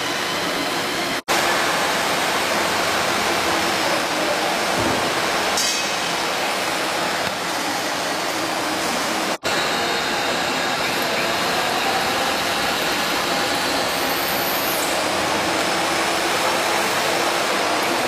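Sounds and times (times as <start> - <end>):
workshop machinery running: 0.0 - 18.0.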